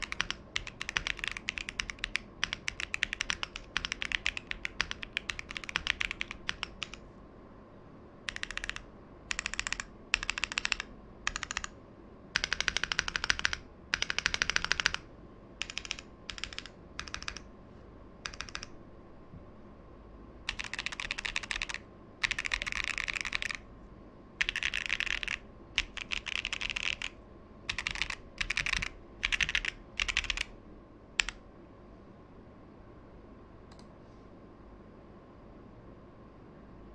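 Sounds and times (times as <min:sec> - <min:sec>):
mechanical keyboard typing: 0:00.0 - 0:07.0, 0:08.3 - 0:11.7, 0:12.4 - 0:15.0, 0:15.6 - 0:17.5, 0:18.2 - 0:18.7, 0:20.5 - 0:23.6, 0:24.4 - 0:30.5, 0:31.2 - 0:31.4.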